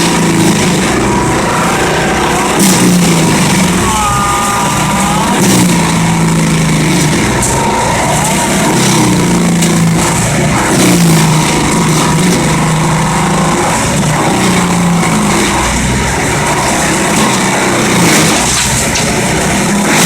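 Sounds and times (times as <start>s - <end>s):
wood chipper running: 0.0s - 20.0s.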